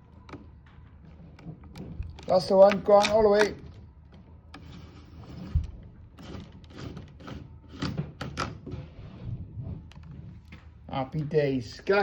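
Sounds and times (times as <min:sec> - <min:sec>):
cable scraping and knocking: 0:00.3 - 0:10.7.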